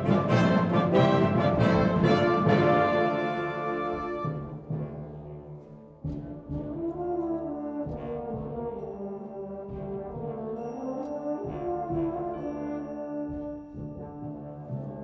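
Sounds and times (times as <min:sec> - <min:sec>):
drum strokes: 0:00.0 - 0:05.0
brass chords: 0:00.0 - 0:05.7.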